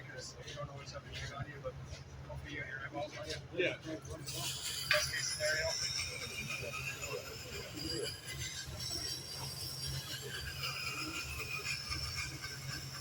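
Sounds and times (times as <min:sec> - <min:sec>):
steel grinding on stone whine: 0:04.1 - 0:13.0.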